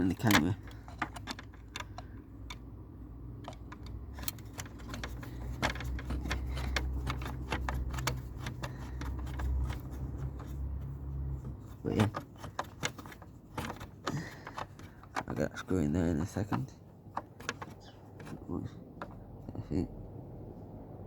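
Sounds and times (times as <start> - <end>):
metal parts clinking: 0.0 - 2.7, 3.4 - 16.4.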